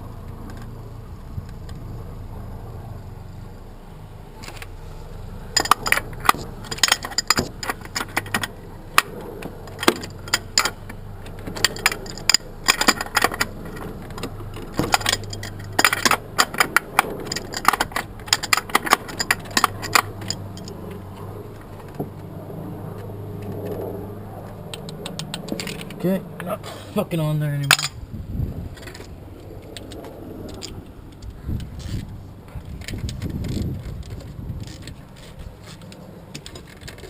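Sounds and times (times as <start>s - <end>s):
steady low hum: 0.0s - 37.0s
metal tools clinking: 5.5s - 22.0s, 24.8s - 26.1s, 27.6s - 28.0s.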